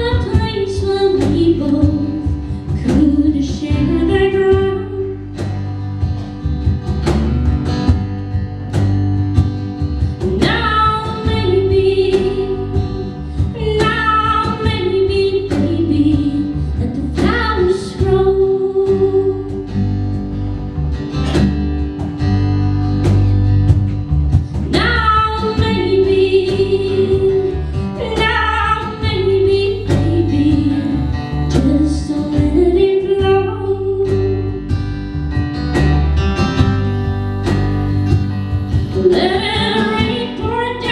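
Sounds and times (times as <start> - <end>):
woman singing: 0.0 - 5.5, 10.0 - 20.0, 24.4 - 34.9, 37.4 - 40.9
acoustic guitar: 0.0 - 40.9
bass: 0.0 - 40.9
cajon beat: 0.0 - 40.9
piano: 0.0 - 40.9.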